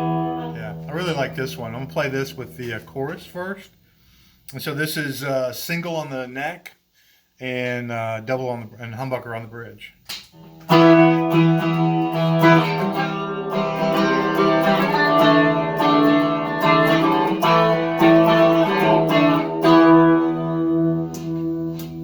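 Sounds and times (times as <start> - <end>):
electric guitar with chorus effect: 0.0 - 3.8, 10.4 - 22.0.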